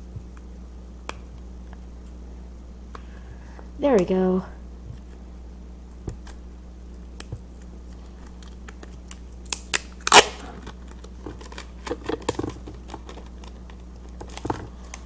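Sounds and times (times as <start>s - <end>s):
plastic and tape crinkling: 7.2s - 15.0s.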